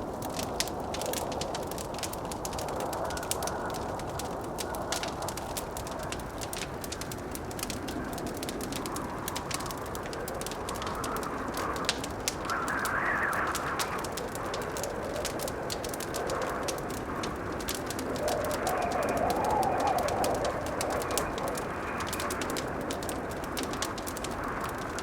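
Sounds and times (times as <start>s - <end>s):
wood fire crackling and popping: 0.0s - 25.0s
blizzard wind rushing: 8.3s - 25.0s.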